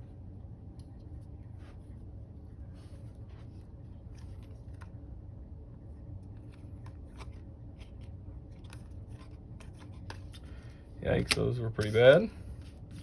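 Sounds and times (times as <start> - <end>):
low hum: 0.0 - 11.4
trading cards being flipped: 11.1 - 12.0.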